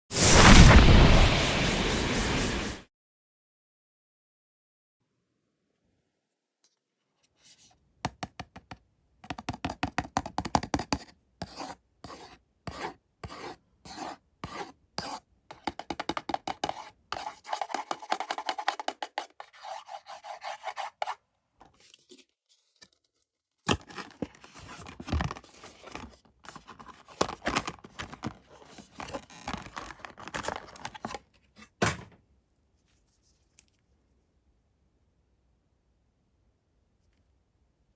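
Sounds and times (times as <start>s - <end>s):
packaging rubbing and tearing: 23.7s - 31.2s.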